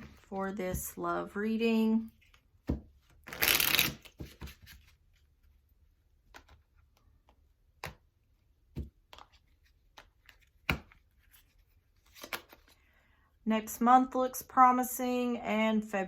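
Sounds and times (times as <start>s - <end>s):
cards tapping and clicking: 6.2s - 8.1s.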